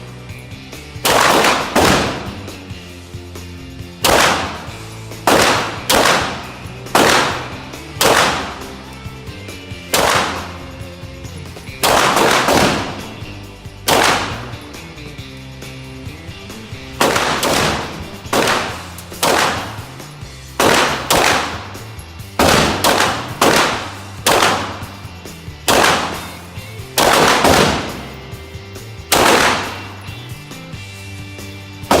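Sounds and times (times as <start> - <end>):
background music: 0.0 - 32.0
pistol shots: 1.0 - 2.7, 4.0 - 8.9, 9.5 - 10.9, 11.8 - 14.8, 16.7 - 30.5, 31.8 - 32.0.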